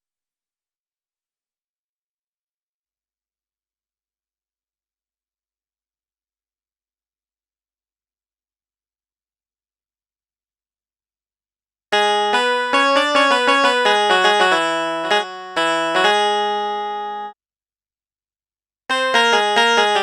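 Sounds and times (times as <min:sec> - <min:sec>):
struck string instrument melody: 0:12.0 - 0:17.4, 0:18.9 - 0:20.0.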